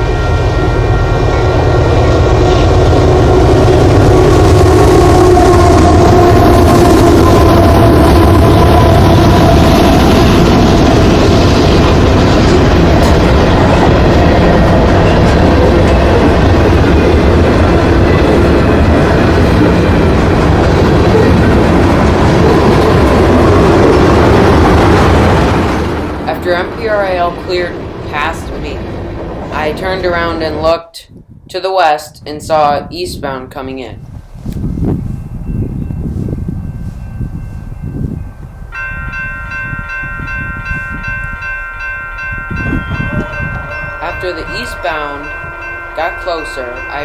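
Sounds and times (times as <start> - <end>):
freight train wheels rumbling on rails: 0.0 - 31.5, 32.4 - 47.0
wind rumble on microphone: 28.1 - 44.8.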